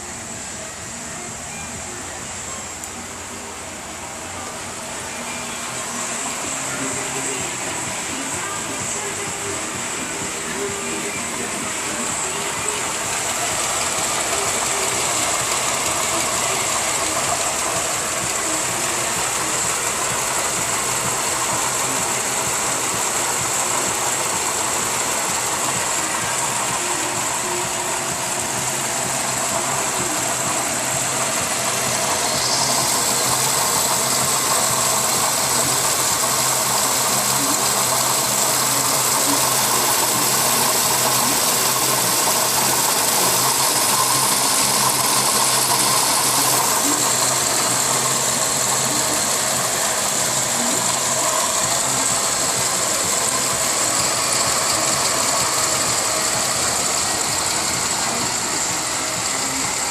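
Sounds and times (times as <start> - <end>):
car engine running: 0.0 - 59.9
high constant whine: 0.0 - 59.9.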